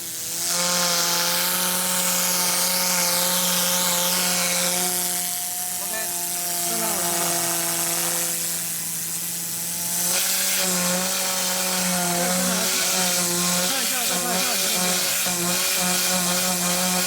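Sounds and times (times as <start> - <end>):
cyclone cleaner air hiss: 10.4 - 17.0.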